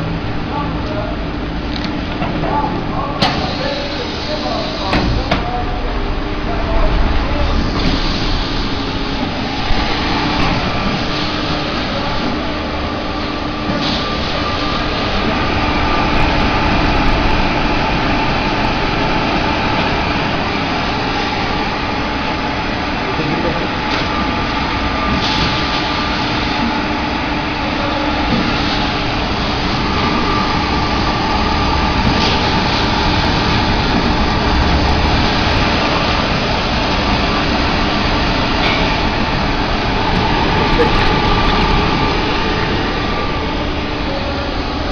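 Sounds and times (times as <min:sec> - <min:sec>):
packaging machine running: 0:27.7 - 0:44.5.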